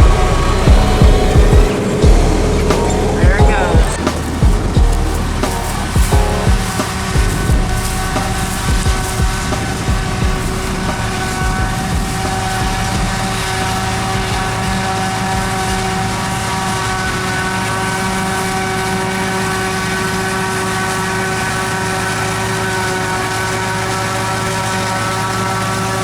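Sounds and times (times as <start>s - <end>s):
deep engine rumble: 0.0s - 17.4s
high-pitched machine whine: 0.0s - 26.0s.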